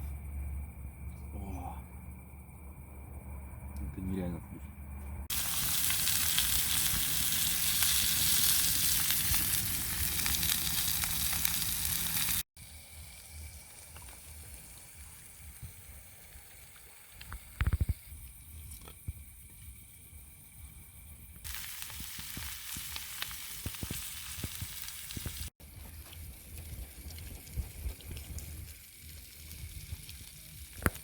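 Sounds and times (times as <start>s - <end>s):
food sizzling in a pan: 5.3s - 18.0s, 21.4s - 31.0s.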